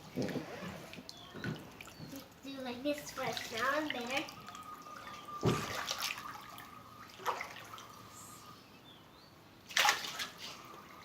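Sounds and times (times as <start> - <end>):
water lapping: 0.0 - 8.6
short splash: 5.4 - 7.8, 9.7 - 10.7.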